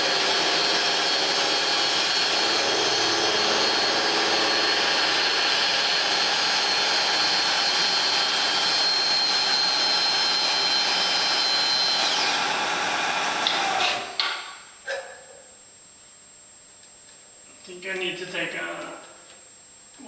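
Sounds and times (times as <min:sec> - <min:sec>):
milling machine cutting metal: 0:00.0 - 0:14.2.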